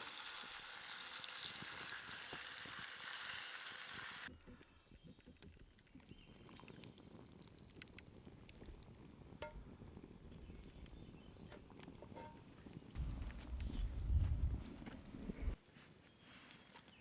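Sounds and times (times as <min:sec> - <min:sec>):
faint low outdoor rumble: 0:04.3 - 0:15.6.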